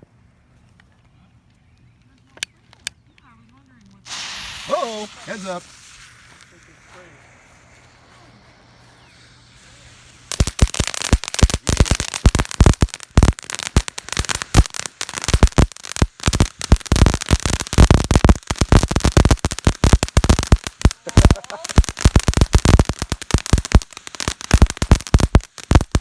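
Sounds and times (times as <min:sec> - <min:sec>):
firework crackling and popping: 0:04.0 - 0:26.0.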